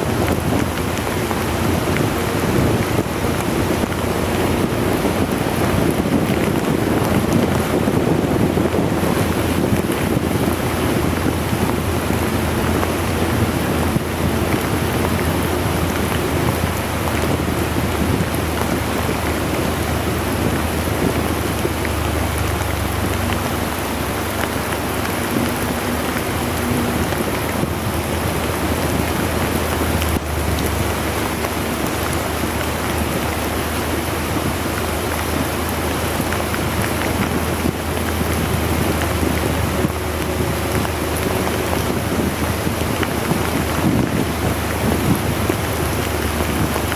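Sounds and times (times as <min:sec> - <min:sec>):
very heavy rain pouring: 0:00.0 - 0:46.9.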